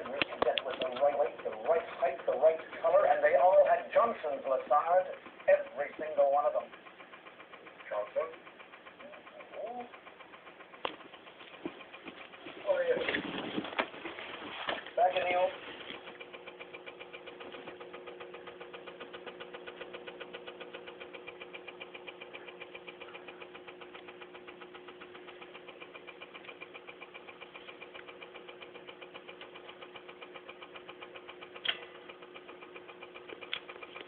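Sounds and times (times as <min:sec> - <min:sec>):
machine hum: 0:00.0 - 0:34.0
rapid mechanical ticking: 0:00.0 - 0:34.0
sharp click: 0:31.4 - 0:32.1.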